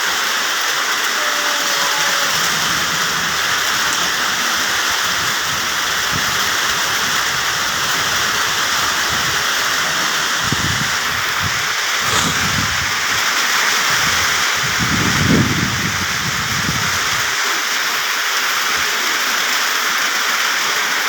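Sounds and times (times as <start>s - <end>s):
rain on leaves: 0.0s - 11.5s.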